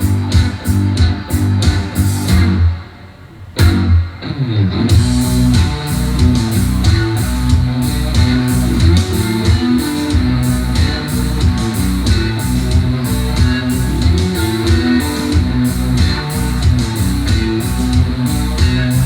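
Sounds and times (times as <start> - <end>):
steady drum beat: 0.0 - 2.8, 3.6 - 4.0, 4.9 - 19.0
bass guitar: 0.0 - 19.0
guitar: 0.0 - 19.0.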